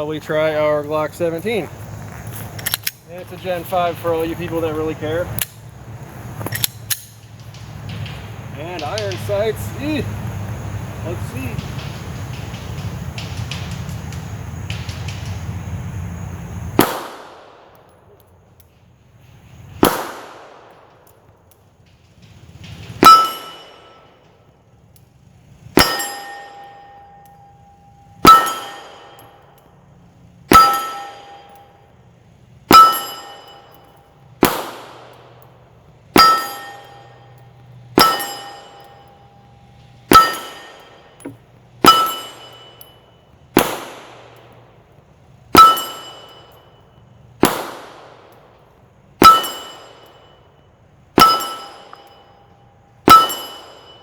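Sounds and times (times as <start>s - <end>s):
pistol shots: 16.8s - 17.8s, 19.8s - 21.0s, 28.2s - 29.6s, 30.5s - 31.6s, 34.4s - 37.2s, 38.0s - 39.1s, 40.1s - 42.9s, 43.5s - 44.8s, 47.4s - 50.3s
metallic ring of steel target: 22.8s - 24.4s, 25.6s - 44.8s, 45.5s - 54.0s.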